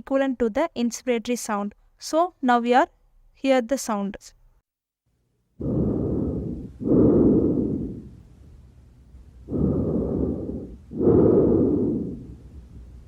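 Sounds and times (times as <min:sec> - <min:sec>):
loud breathing: 0:05.6 - 0:13.0.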